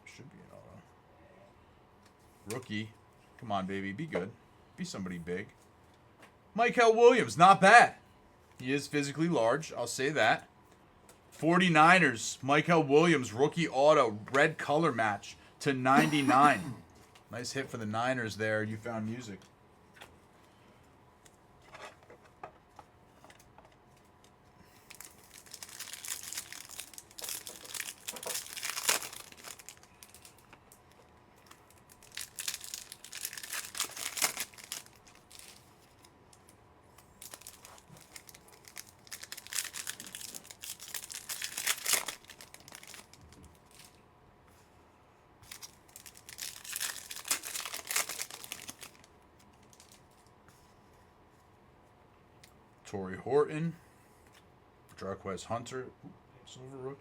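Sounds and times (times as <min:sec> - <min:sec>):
foil packs tearing and crinkling: 0:24.8 - 0:30.5, 0:31.5 - 0:36.1, 0:37.2 - 0:44.0, 0:45.4 - 0:50.0.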